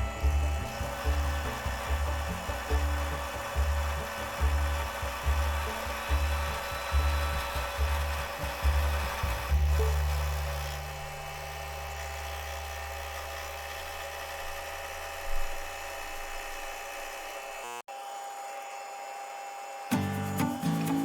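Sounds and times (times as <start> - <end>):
electric motor humming: 0.0 - 21.0.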